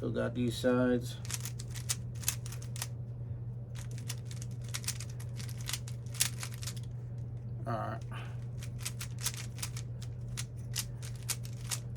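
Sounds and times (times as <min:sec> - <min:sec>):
steady low hum: 0:00.0 - 0:11.9
plastic puzzle cube clicking: 0:01.3 - 0:02.9, 0:03.8 - 0:06.8, 0:08.7 - 0:09.8, 0:10.8 - 0:11.8.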